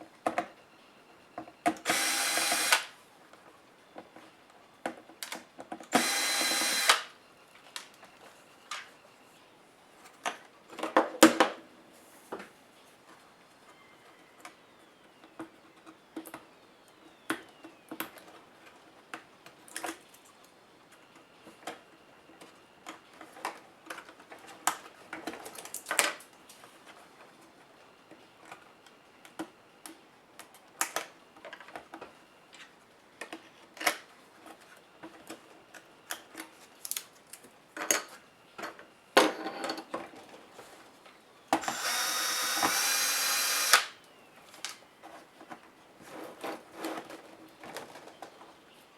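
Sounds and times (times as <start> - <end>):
steady whirring: 41.6 - 43.9.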